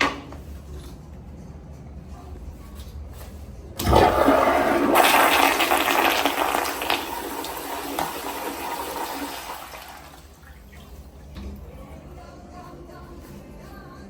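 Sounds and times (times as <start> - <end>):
toilet flushing: 3.8 - 11.7.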